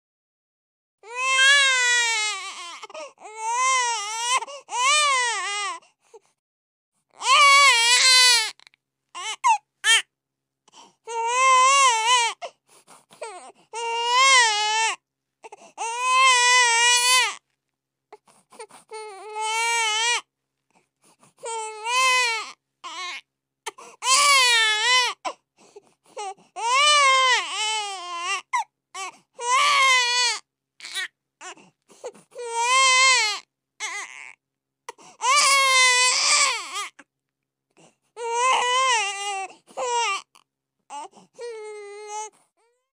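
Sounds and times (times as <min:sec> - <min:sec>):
baby crying: 0:01.0 - 0:05.8, 0:07.2 - 0:10.1, 0:11.1 - 0:12.5, 0:13.2 - 0:17.4, 0:18.6 - 0:20.3, 0:21.4 - 0:25.3, 0:26.2 - 0:31.6, 0:32.3 - 0:34.4, 0:35.2 - 0:37.0, 0:38.2 - 0:42.3.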